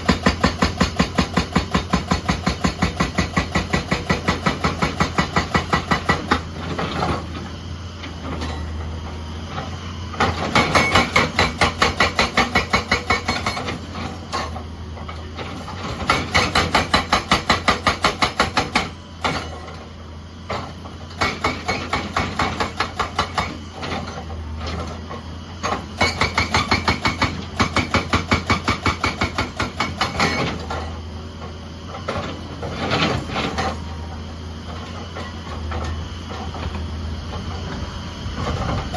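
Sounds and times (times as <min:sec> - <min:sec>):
hydraulic breaker hammer pounding: 0:00.0 - 0:07.3, 0:10.2 - 0:14.6, 0:15.6 - 0:19.8, 0:20.5 - 0:24.9, 0:25.6 - 0:30.9
diesel engine humming: 0:03.6 - 0:11.8, 0:29.0 - 0:38.9.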